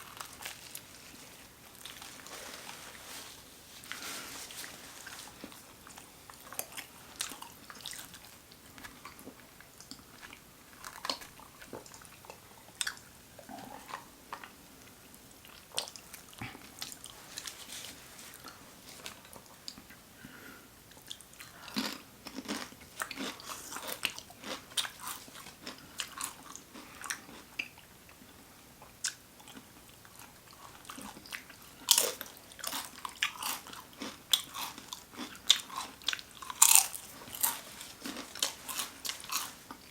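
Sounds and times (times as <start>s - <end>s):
crunchy bites of toasted sandwiches: 21.0s - 39.9s.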